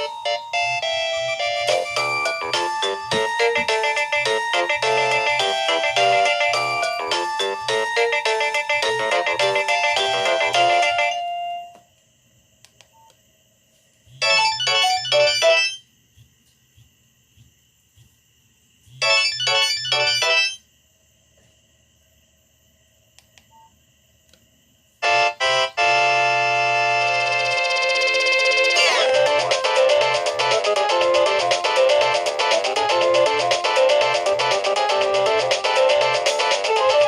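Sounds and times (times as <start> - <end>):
phone ringtone melody: 0.0 - 11.8, 14.2 - 15.8, 19.0 - 20.6, 25.0 - 37.0.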